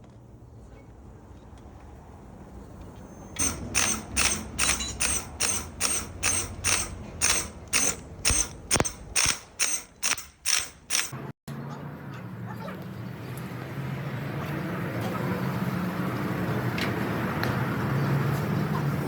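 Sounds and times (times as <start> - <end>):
ratchet wrench clicking: 3.4 - 11.2.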